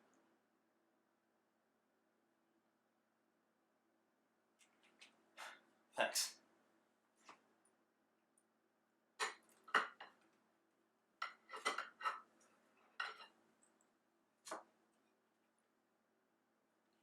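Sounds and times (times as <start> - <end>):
cutlery clinking on a plate: 9.2 - 10.2, 11.2 - 12.3, 13.0 - 13.4.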